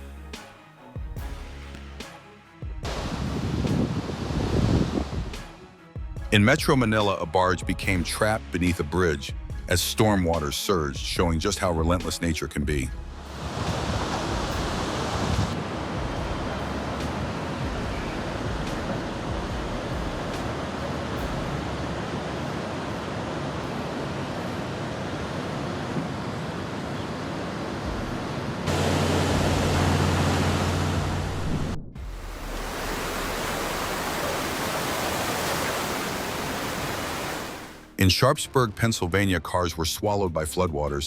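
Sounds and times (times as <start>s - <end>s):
wind on microphone: 2.8s - 5.4s, 13.4s - 22.4s, 30.9s - 33.1s
low rumble: 12.9s - 20.4s, 27.9s - 34.2s
floodwater rushing: 13.2s - 37.9s.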